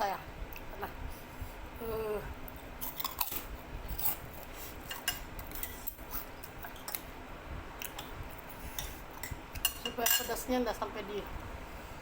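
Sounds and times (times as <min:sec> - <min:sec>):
cutlery clinking against a dish: 0:04.8 - 0:07.0, 0:08.8 - 0:10.4.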